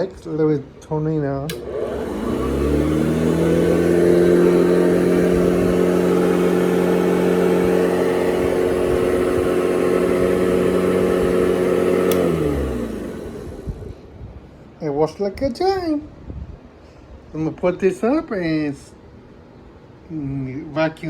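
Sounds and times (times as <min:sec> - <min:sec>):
switch click: 0:01.4 - 0:01.7, 0:11.8 - 0:12.6
vacuum cleaner motor humming: 0:01.5 - 0:14.2.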